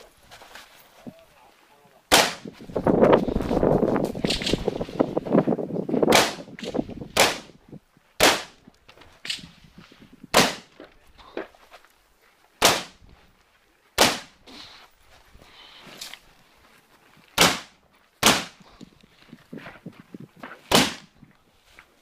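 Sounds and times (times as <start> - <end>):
rifle shots: 2.1 - 2.4, 6.1 - 6.5, 7.2 - 7.5, 8.2 - 8.6, 10.3 - 10.7, 12.6 - 13.0, 17.4 - 18.6, 20.7 - 21.1.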